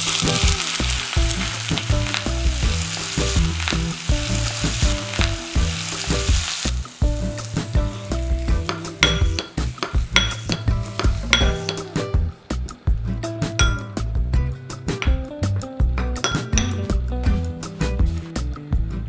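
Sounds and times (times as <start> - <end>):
food sizzling in hot oil: 0.0 - 12.9.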